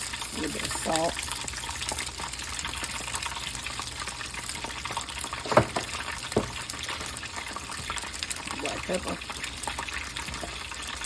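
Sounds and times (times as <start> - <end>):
food sizzling in hot oil: 0.0 - 11.0
sharp knocks: 5.4 - 6.6.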